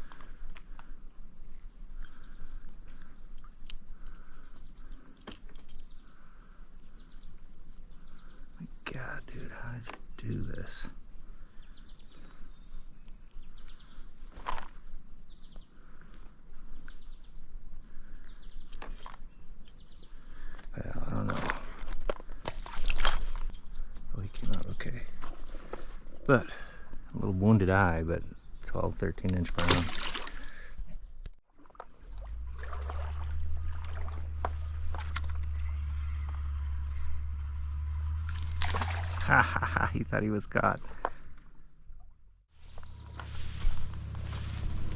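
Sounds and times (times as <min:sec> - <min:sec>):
stream water sloshing and gurgling: 0:20.9 - 0:26.4, 0:29.2 - 0:37.1, 0:37.9 - 0:44.9.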